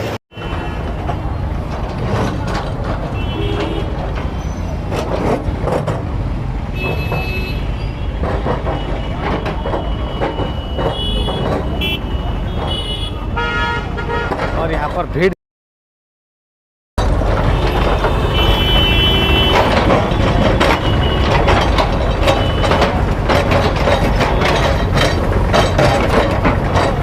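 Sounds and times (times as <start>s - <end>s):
traffic engine rumble: 0.0s - 15.4s, 17.0s - 27.0s
car horn honking: 3.2s - 3.9s, 6.8s - 14.5s, 17.5s - 21.6s.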